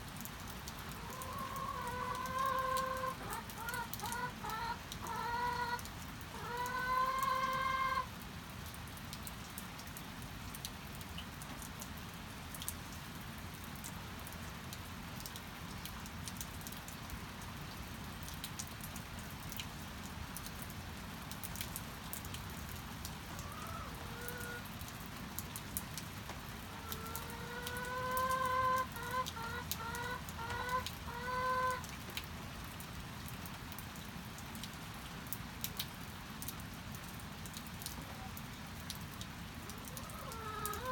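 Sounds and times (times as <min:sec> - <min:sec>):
steady rain: 0:00.0 - 0:40.9
dripping water: 0:00.2 - 0:08.0, 0:21.4 - 0:32.3
chickens calling: 0:00.8 - 0:08.1, 0:23.3 - 0:24.6, 0:26.7 - 0:31.8, 0:39.8 - 0:40.9
chicken clucking: 0:01.0 - 0:08.1, 0:26.7 - 0:31.8, 0:40.0 - 0:40.9.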